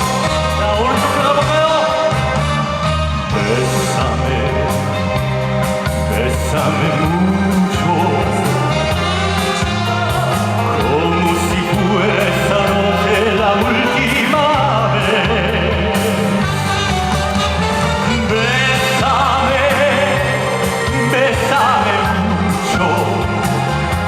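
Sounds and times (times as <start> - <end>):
person singing: 0.0 - 17.0, 17.9 - 24.0
live pop band music: 0.0 - 24.0.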